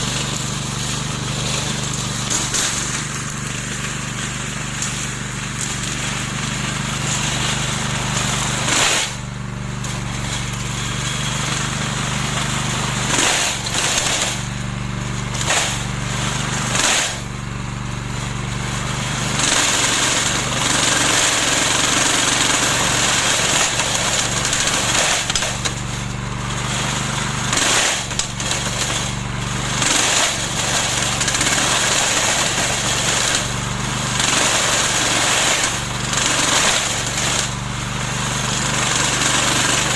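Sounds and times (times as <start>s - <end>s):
lawn mower running: 0.0s - 39.9s.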